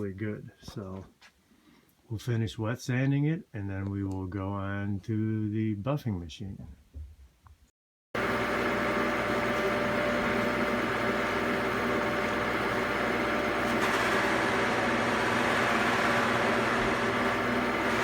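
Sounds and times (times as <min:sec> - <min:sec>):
buffing machine motor humming: 0:08.2 - 0:18.0.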